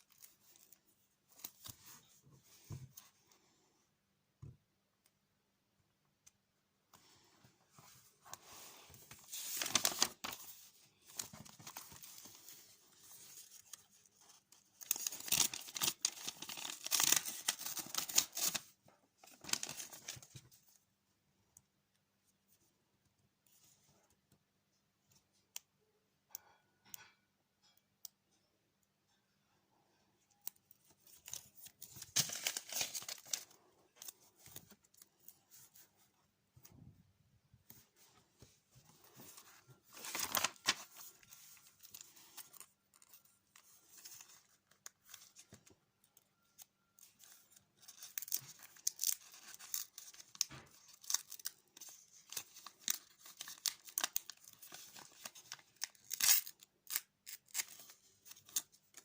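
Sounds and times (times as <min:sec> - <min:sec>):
paper rustling and tearing: 0:08.4 - 0:20.4, 0:31.2 - 0:34.6, 0:39.1 - 0:45.4, 0:47.2 - 0:59.0.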